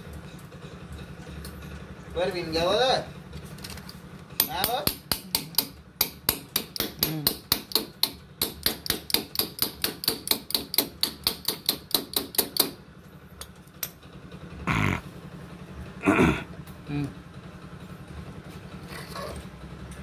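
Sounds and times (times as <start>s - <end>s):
hammer tapping on metal: 4.4s - 12.8s.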